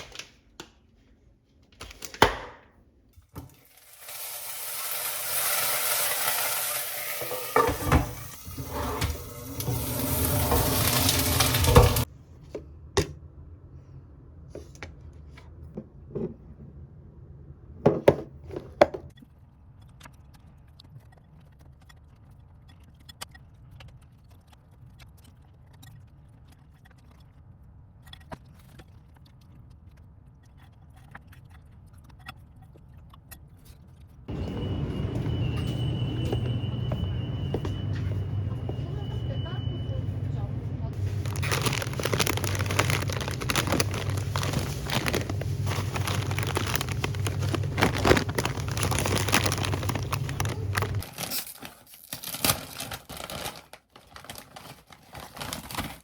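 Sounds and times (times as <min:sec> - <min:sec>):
loud steady cooking hiss: 0:03.7 - 0:12.1.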